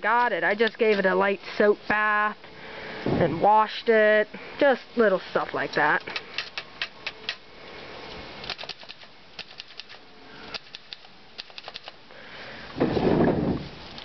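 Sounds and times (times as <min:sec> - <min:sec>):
typewriter mechanism clicking: 0:08.4 - 0:12.0.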